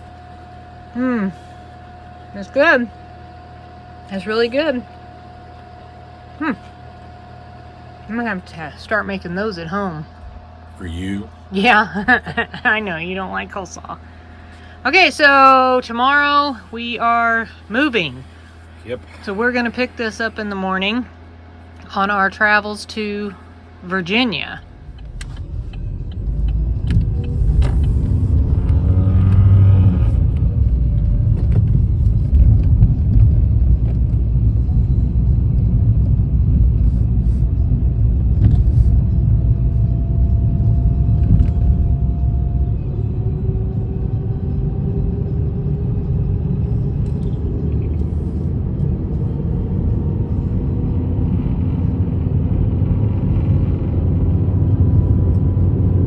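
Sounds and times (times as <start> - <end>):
faint rising whine: 0.0 - 56.0
car engine and road noise: 23.5 - 56.0.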